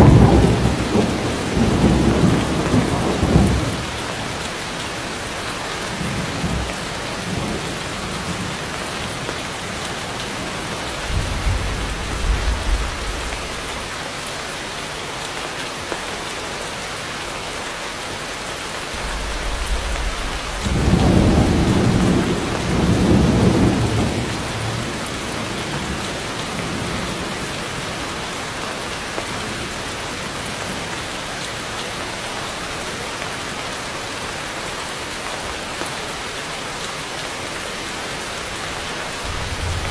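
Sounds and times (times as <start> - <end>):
thunder rumbling: 0.0 - 4.4, 10.1 - 14.0, 18.9 - 26.0, 39.2 - 39.9
heavy rain on foliage: 0.0 - 39.9.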